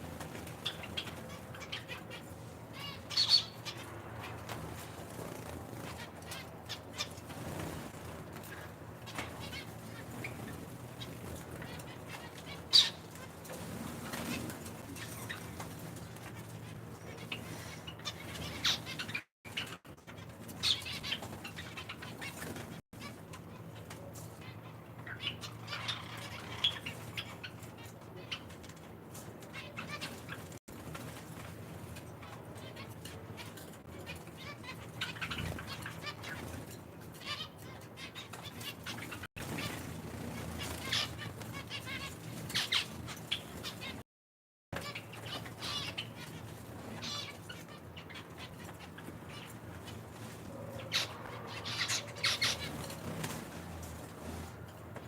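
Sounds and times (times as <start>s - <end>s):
small birds chirping: 0.0s - 44.0s, 44.8s - 55.0s
finches chirping: 0.6s - 3.9s, 8.4s - 13.1s, 50.8s - 54.4s.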